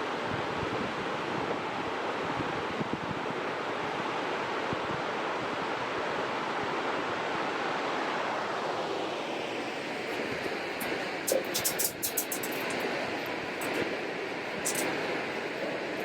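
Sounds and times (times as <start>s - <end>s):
river rushing: 3.8s - 16.0s.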